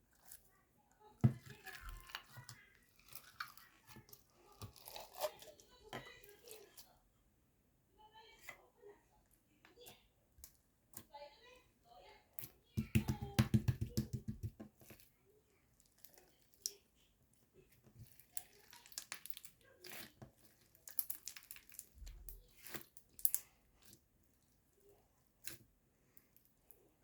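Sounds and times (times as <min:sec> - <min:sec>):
crunchy slime crackling: 0:01.4 - 0:05.6, 0:18.1 - 0:24.0.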